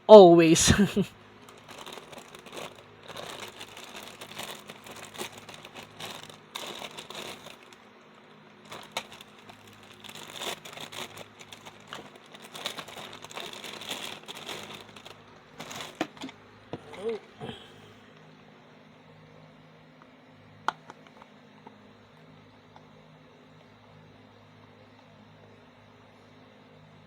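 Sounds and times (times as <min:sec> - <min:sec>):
plastic wrapping crinkling: 0:01.2 - 0:07.9, 0:08.6 - 0:16.4.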